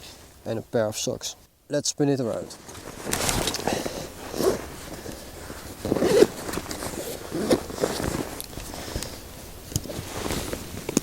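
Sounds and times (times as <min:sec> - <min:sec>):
backpack fabric rustling: 0:02.3 - 0:11.0
zipper pulled open: 0:02.7 - 0:10.7.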